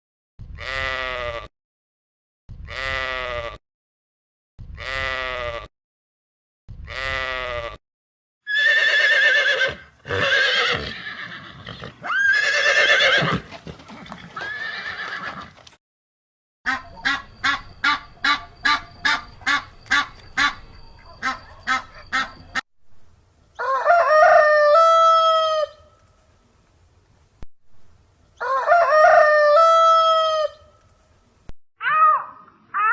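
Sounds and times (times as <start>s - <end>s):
farm animal calls: 16.7s - 22.6s
short pulsing calls: 16.7s - 22.6s.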